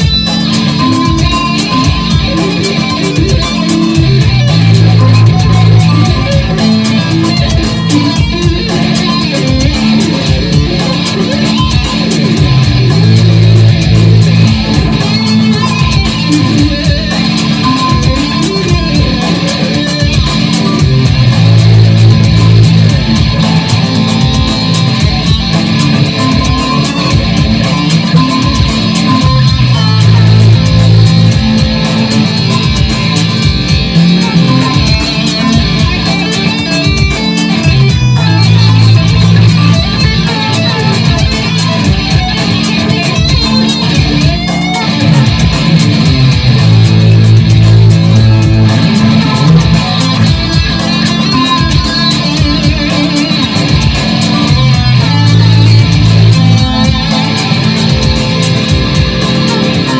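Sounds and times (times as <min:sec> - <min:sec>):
electric guitar heavy riffing: 0:00.0 - 0:59.9.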